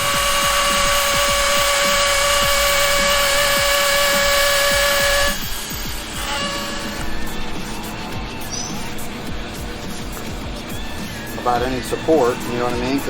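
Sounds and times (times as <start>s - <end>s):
stair lift motor whining: 0.0s - 13.0s.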